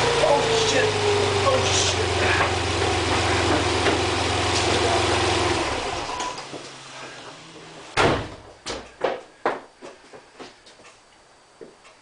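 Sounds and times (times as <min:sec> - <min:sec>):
car engine idling: 0:00.0 - 0:08.0.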